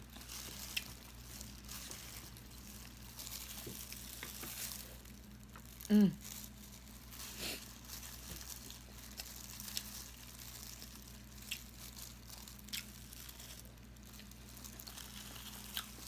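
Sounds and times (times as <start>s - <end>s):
person chewing food: 0.0s - 16.0s
steady low hum: 0.0s - 16.0s.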